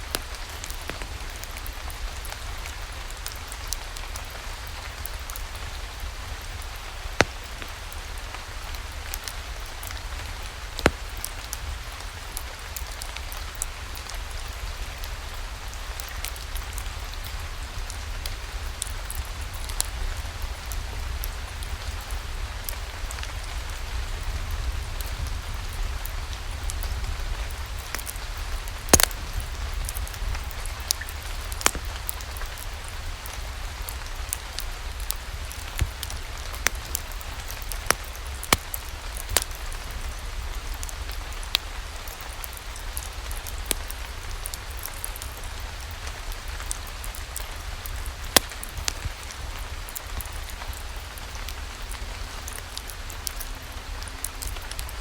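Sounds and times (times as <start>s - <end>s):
steady rainfall: 0.0s - 55.0s
sharp pops: 28.9s - 29.4s.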